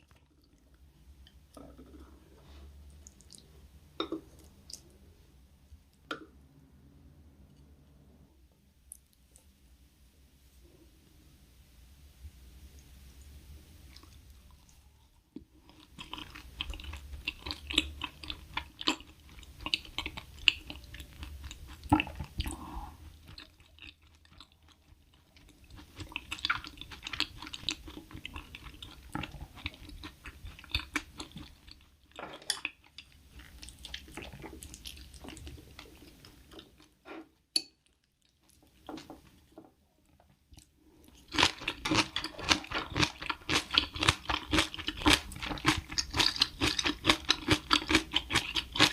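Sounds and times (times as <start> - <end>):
person chewing food: 0.0 - 3.5, 15.4 - 48.9.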